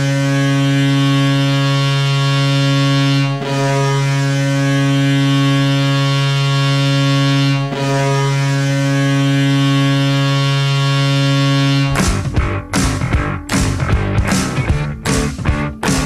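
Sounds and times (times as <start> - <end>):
goal horn blasts: 0.0 - 12.6.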